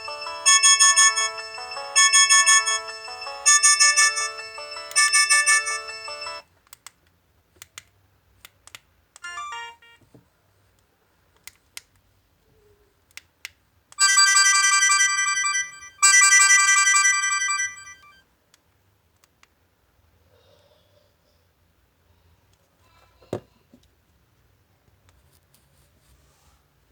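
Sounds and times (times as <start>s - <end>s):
phone alarm melody: 0.0s - 6.4s, 9.2s - 10.0s, 14.0s - 18.2s.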